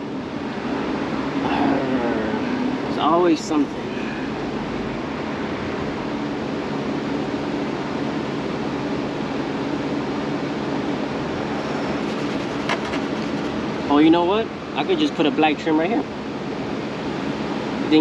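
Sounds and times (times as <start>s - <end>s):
low hum: 0.0s - 14.6s
steady rushing noise: 0.0s - 18.0s.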